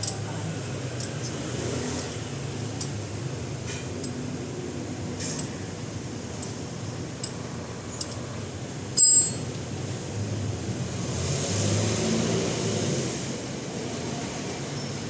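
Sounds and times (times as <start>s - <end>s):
metallic clank with ringing: 9.0s - 9.5s.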